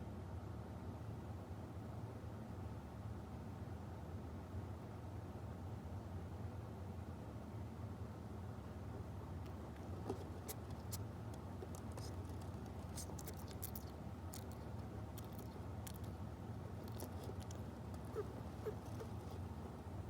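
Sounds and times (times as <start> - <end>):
steady low hum: 8.6 - 20.0.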